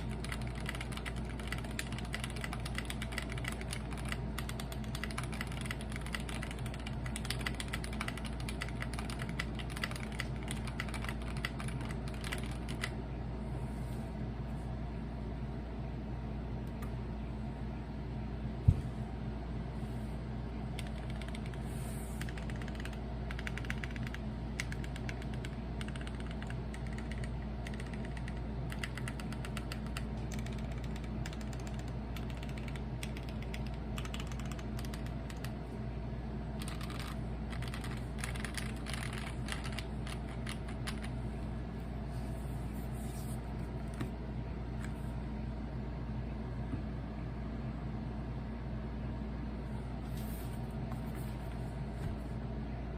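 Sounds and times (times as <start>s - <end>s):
mechanical keyboard typing: 0.0s - 13.0s, 20.8s - 21.6s, 22.2s - 35.6s, 36.6s - 41.1s
steady low hum: 0.0s - 52.9s.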